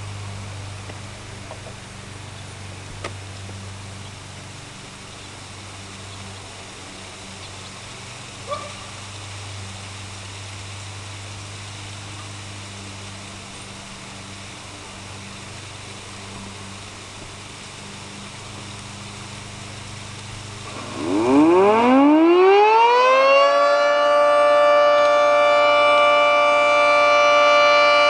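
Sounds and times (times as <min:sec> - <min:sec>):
background hiss: 0:00.0 - 0:22.4
low hum: 0:00.0 - 0:28.0.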